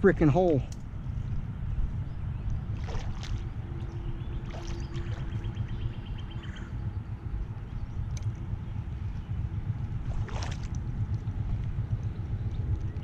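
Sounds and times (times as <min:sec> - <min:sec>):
creek water rumbling: 0:02.6 - 0:06.6, 0:09.6 - 0:12.9
light ticks: 0:08.0 - 0:08.5, 0:10.7 - 0:13.0.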